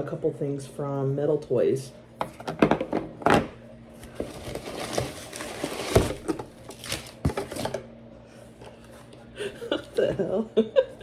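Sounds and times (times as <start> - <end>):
packaging crinkling and rustling: 4.0 - 7.8.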